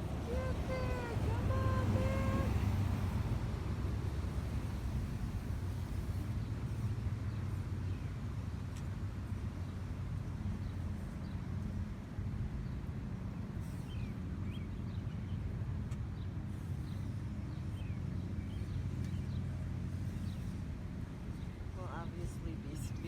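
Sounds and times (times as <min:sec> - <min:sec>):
small birds chirping: 0:13.5 - 0:20.7.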